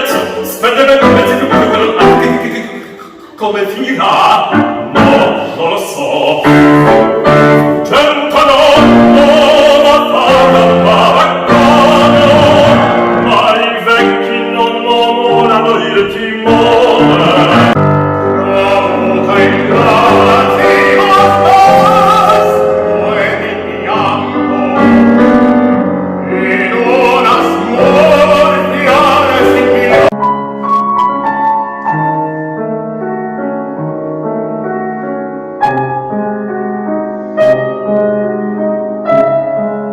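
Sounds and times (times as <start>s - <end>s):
person singing: 0.0s - 30.3s
piano playing: 0.0s - 39.9s.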